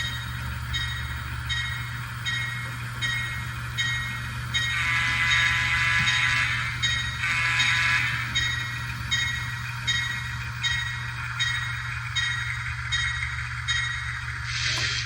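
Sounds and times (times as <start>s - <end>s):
locomotive bell ringing: 0.0s - 14.5s
locomotive horn: 4.7s - 8.4s.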